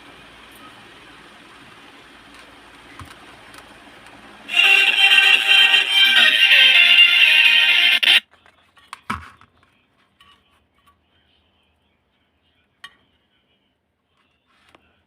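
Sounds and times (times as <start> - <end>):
electronic music: 4.5 - 8.2.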